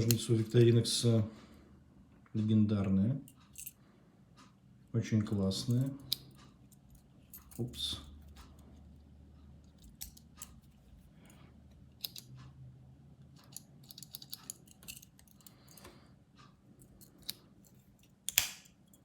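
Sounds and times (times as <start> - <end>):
scissors clicking and snipping: 12.0 - 12.4, 18.3 - 19.0.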